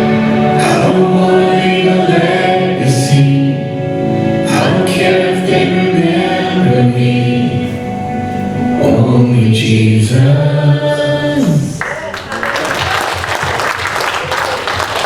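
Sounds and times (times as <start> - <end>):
group singing a gospel song: 0.0 - 11.8.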